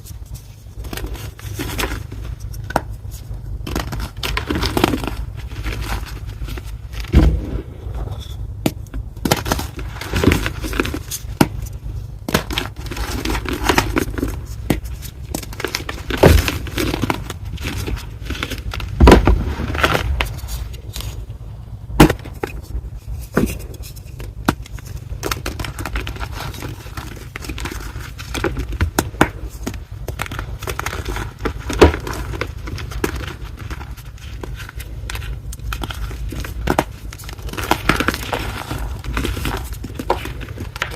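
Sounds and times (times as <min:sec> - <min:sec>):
chalk block crunching: 0:22.0 - 0:40.9.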